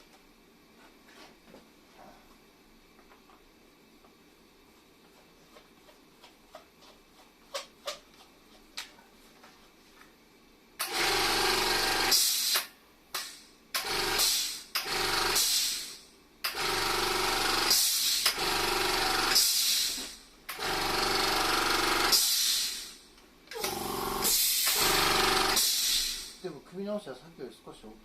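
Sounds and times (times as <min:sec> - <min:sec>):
air compressor rattling: 0:10.8 - 0:12.6, 0:13.8 - 0:26.4.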